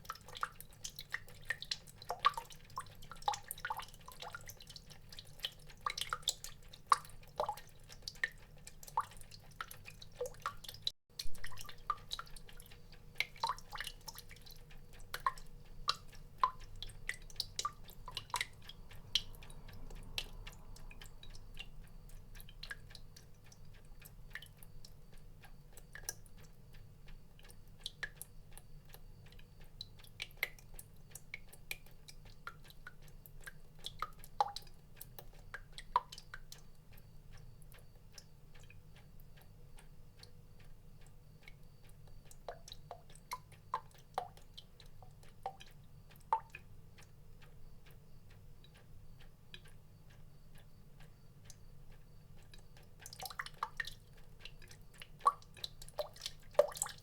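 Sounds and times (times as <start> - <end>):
water drops plinking: 11.2 - 12.4.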